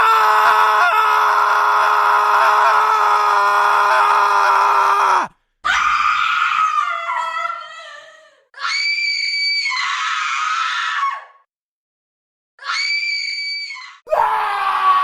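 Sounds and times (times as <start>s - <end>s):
person screaming: 0.0s - 5.3s, 14.1s - 15.0s.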